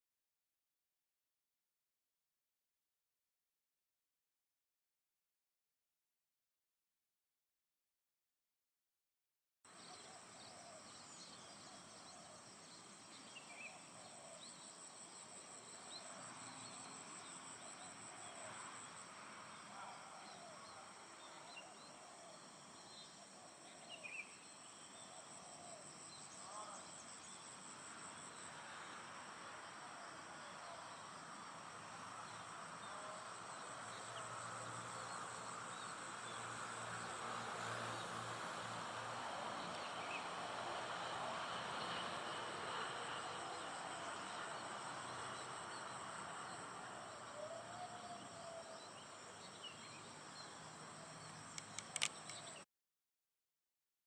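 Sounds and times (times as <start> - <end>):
high insect trill: 20.2 - 52.6.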